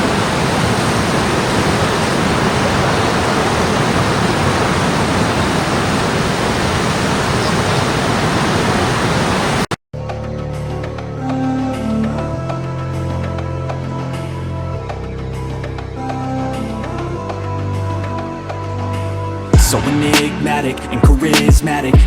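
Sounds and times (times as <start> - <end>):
waterfall rushing: 0.0 - 9.8
music: 10.0 - 22.0.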